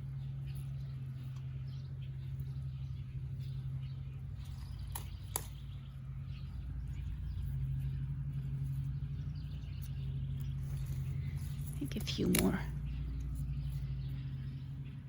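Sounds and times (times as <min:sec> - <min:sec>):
low hum: 0:00.0 - 0:15.0
flower stems snapping: 0:04.8 - 0:05.8, 0:09.8 - 0:13.4.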